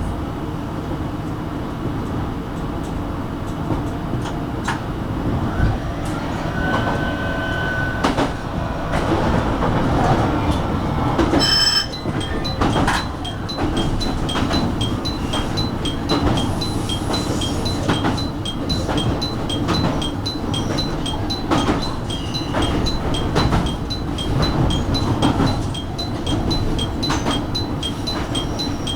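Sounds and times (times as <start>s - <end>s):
train wheels rumbling on rail: 0.0s - 28.9s
short electronic beep: 5.5s - 8.7s
even ticking: 11.2s - 28.9s.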